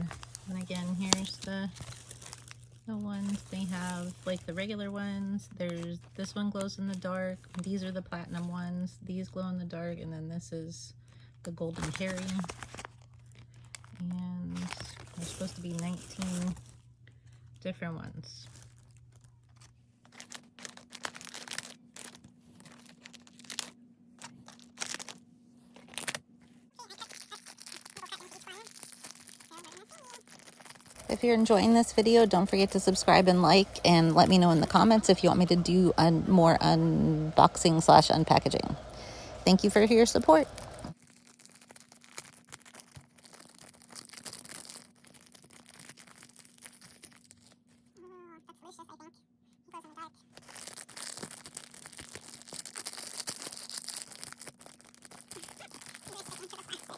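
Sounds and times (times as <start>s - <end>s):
plastic packaging crinkling: 0.0s - 8.6s, 11.2s - 17.6s, 18.2s - 47.9s, 49.8s - 56.9s
faint steady hum: 0.0s - 41.8s.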